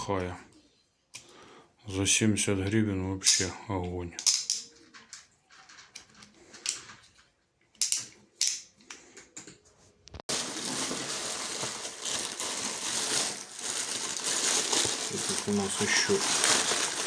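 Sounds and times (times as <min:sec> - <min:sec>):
plastic packaging crinkling: 0:10.3 - 0:17.0.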